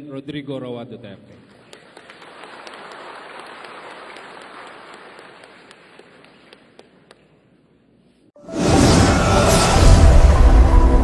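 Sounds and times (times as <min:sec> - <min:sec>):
audience applause: 0:01.6 - 0:06.8.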